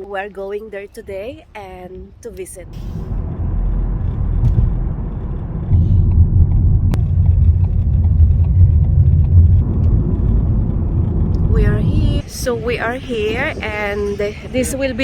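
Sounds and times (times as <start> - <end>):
car road rumble from inside: 0.0 - 15.0.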